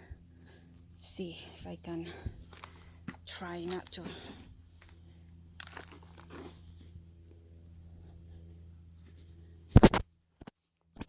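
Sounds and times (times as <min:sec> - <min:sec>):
steady low hum: 0:00.0 - 0:11.0
hands digging through soil: 0:05.5 - 0:06.8.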